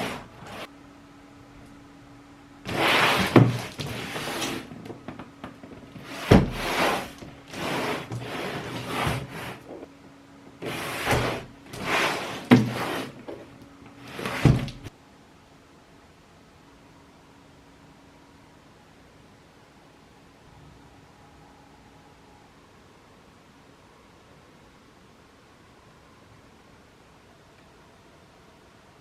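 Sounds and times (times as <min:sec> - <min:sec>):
cardboard scraping and rustling: 0:00.0 - 0:00.7, 0:02.7 - 0:09.9, 0:10.5 - 0:14.9.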